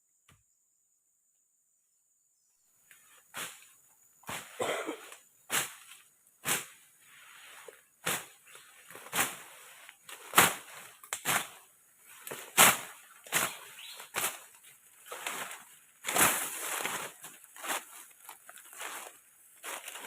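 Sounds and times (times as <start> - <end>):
rustling: 5.6 - 20.0.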